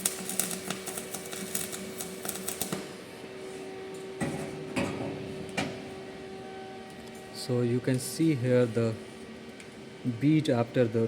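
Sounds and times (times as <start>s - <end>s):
welding arc crackling: 0.0s - 3.0s
steady hum: 0.0s - 11.0s.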